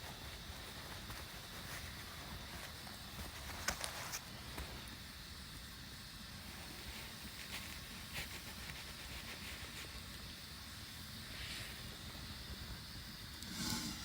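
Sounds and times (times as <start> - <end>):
fire popping: 0.0 - 14.0
steady low hiss: 0.0 - 14.0
campfire crackling: 0.1 - 14.0.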